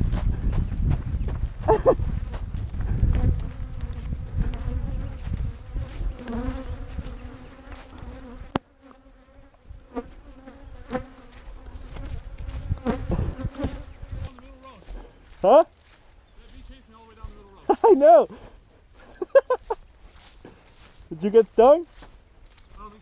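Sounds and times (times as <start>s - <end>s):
wind and handling rumble: 0.0s - 7.2s
bee zipping past: 3.2s - 14.3s
bees buzzing: 3.2s - 14.9s.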